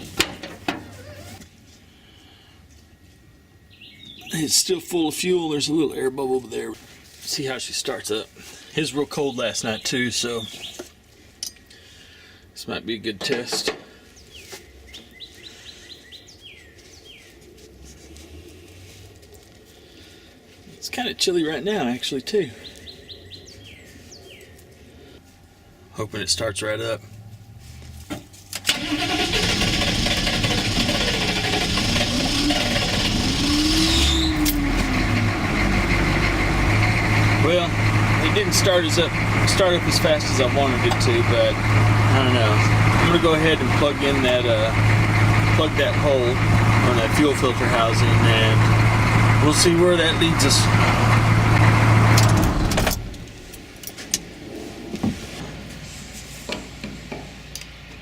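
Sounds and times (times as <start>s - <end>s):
diesel engine cranking: 0.0s - 1.5s, 28.5s - 54.0s.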